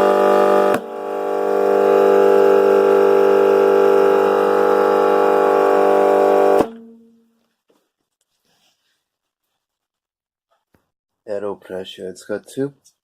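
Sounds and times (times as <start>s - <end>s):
air compressor running: 0.0s - 7.1s.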